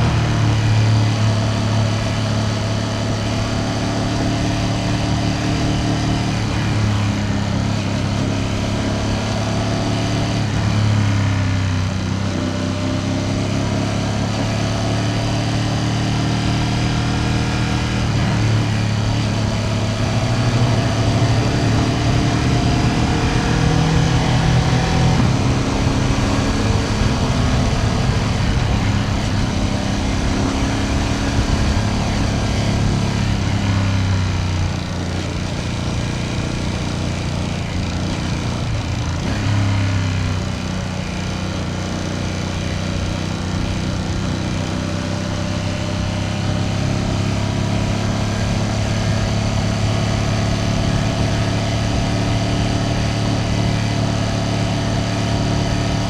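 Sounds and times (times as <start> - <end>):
motorcycle engine cruising: 0.0 - 56.0.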